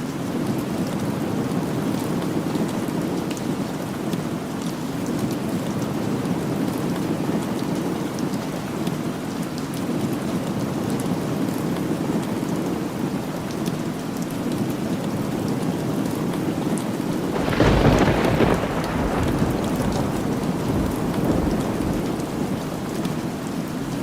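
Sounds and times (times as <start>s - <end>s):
steady rain: 0.0s - 24.0s
thunder rumbling: 17.2s - 23.6s.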